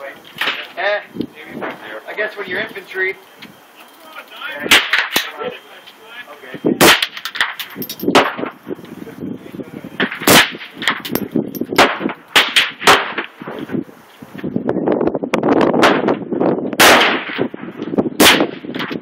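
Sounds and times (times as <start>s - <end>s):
gunshots: 16.8s - 17.4s, 18.2s - 18.6s.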